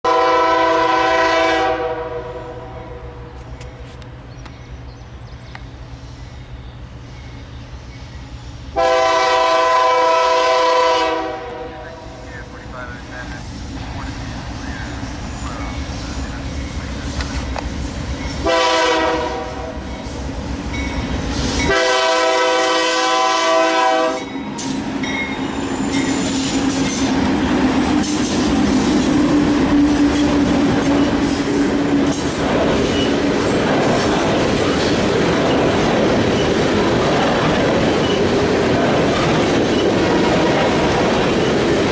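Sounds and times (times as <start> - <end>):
locomotive air horn: 0.0 - 3.3, 8.8 - 12.2, 18.4 - 19.9, 21.6 - 24.3
diesel locomotives rumbling: 0.0 - 41.9
train wheel noise: 0.1 - 41.9
clickety-clack over rail joints: 3.3 - 4.7, 12.4 - 18.4, 24.2 - 41.9.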